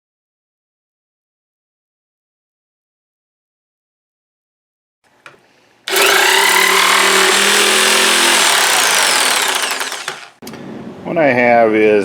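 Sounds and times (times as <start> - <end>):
electric jigsaw running: 5.9 - 10.4.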